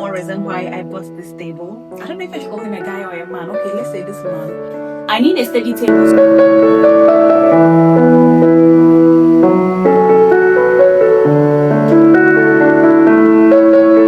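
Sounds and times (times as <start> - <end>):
slow gentle piano melody: 0.0 - 14.0.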